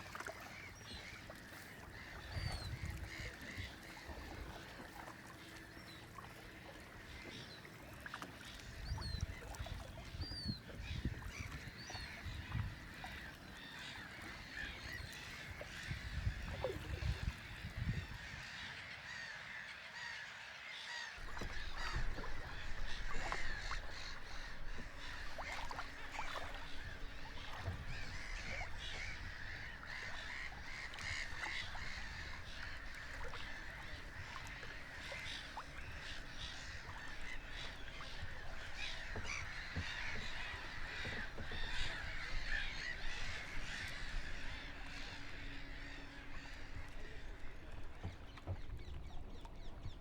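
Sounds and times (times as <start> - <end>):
flock of birds calling: 20.9 - 49.0.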